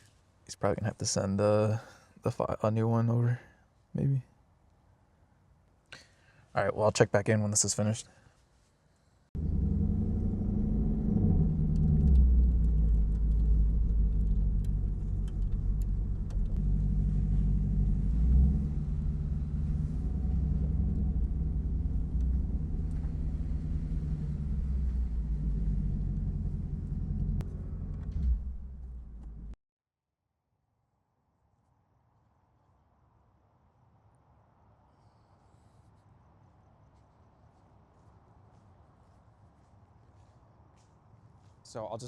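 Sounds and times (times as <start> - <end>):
engine low rumble: 9.4 - 29.6.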